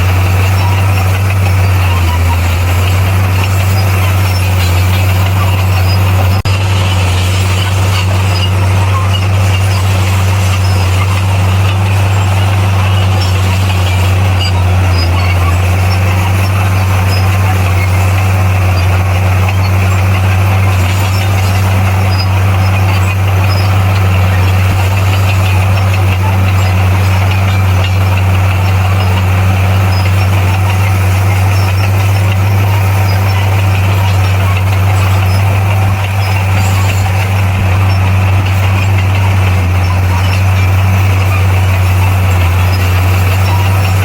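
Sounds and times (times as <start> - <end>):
diesel engine droning: 0.0 - 44.0.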